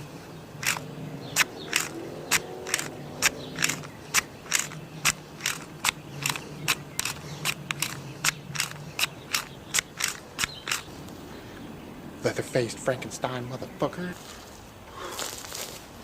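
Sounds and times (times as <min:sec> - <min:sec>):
footsteps crunching on rough ground: 0:14.1 - 0:16.0.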